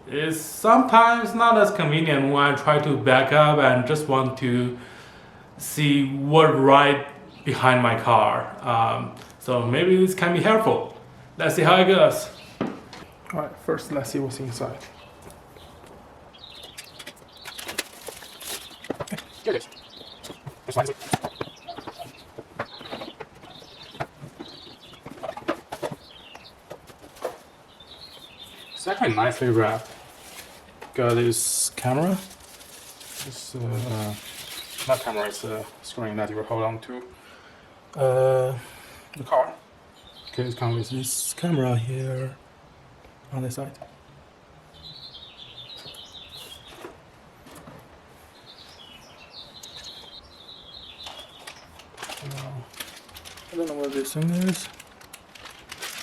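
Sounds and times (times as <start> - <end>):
songbird warbling: 14.9 - 26.6
packaging clicks and rustles: 16.6 - 27.5, 28.2 - 35.8, 51.0 - 56.0
plastic wrapping crinkling: 16.6 - 35.9, 51.0 - 56.0.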